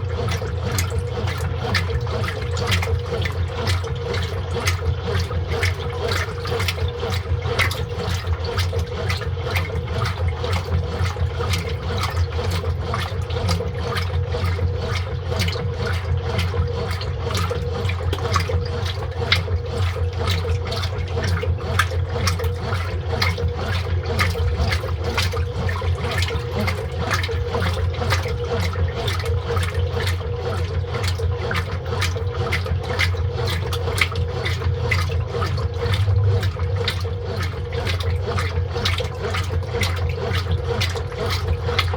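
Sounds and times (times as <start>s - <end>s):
washing machine low hum: 0.0s - 41.9s
water rushing and splashing: 19.3s - 41.9s.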